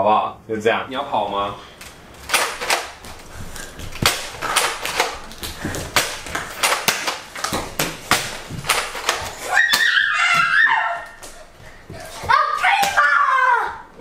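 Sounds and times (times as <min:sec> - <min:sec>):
darts striking: 0:02.3 - 0:10.5.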